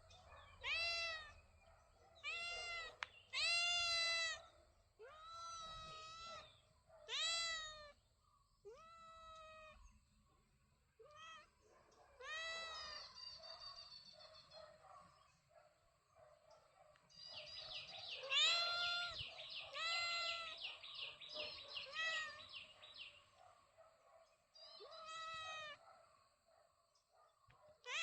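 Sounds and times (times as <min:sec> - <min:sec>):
cat meowing: 0:00.6 - 0:01.4, 0:02.2 - 0:04.4, 0:05.0 - 0:06.5, 0:07.1 - 0:08.0, 0:08.7 - 0:09.8, 0:11.0 - 0:11.5, 0:12.2 - 0:13.0, 0:18.3 - 0:20.6, 0:21.8 - 0:22.5, 0:24.8 - 0:25.8.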